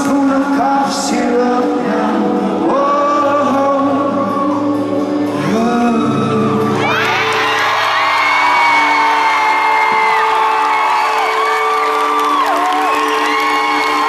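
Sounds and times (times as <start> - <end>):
man singing long notes: 0.0 - 7.6.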